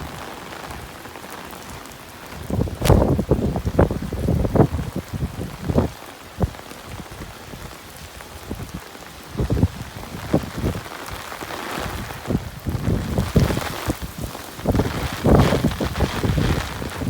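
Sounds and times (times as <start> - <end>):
heavy rain pouring: 0.0 - 17.0
low thumps: 2.8 - 3.3.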